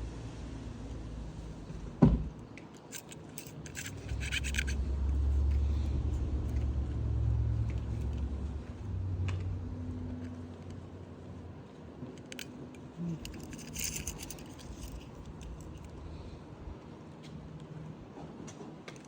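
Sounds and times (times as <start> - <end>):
small metal parts clinking: 2.7 - 5.6, 7.6 - 8.2, 12.2 - 15.9.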